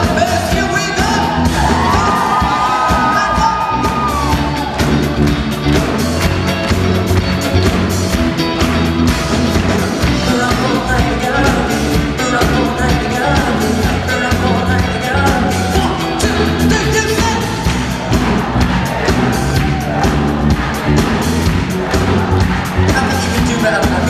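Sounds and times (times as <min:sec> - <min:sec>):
man singing: 0:00.0 - 0:04.3, 0:10.0 - 0:17.8, 0:22.8 - 0:24.0
live pop band playing: 0:00.0 - 0:24.0.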